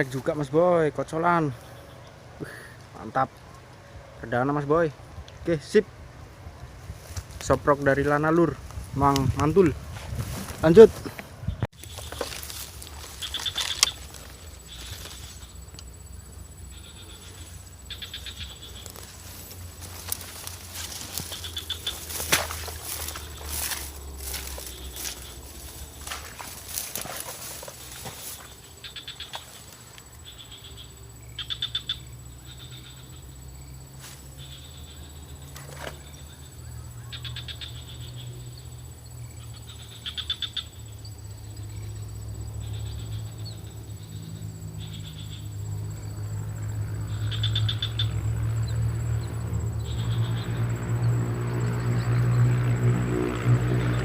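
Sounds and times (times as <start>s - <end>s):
rapidly pulsed animal calls: 11.8s - 52.6s.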